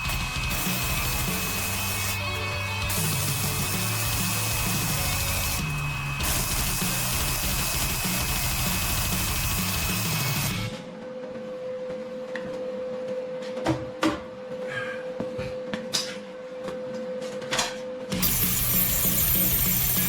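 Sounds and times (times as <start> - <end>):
background music: 0.0 - 11.2.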